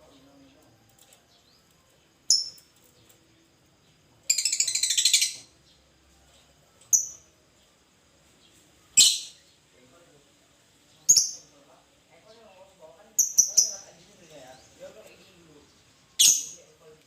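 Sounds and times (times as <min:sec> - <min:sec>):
bird shrill chirps: 0:01.2 - 0:02.7, 0:04.3 - 0:05.8, 0:06.9 - 0:07.4, 0:08.9 - 0:09.6, 0:11.0 - 0:11.6, 0:13.1 - 0:16.8
bird rapid chattering: 0:04.3 - 0:05.5, 0:13.1 - 0:15.4, 0:16.2 - 0:16.8.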